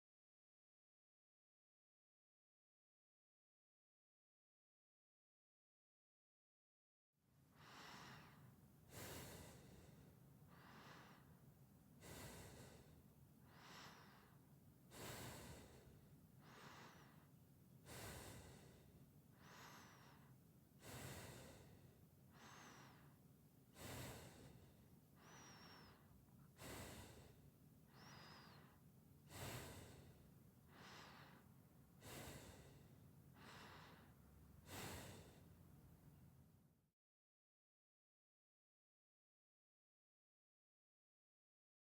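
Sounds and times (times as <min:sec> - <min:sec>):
person breathing through the nose: 0:07.6 - 0:11.4, 0:12.0 - 0:35.8.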